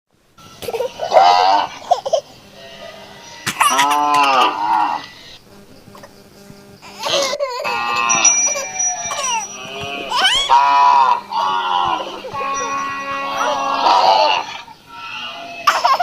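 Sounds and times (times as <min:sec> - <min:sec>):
cattle mooing: 0:01.1 - 0:01.8, 0:02.6 - 0:05.2, 0:07.7 - 0:08.4, 0:09.2 - 0:15.7.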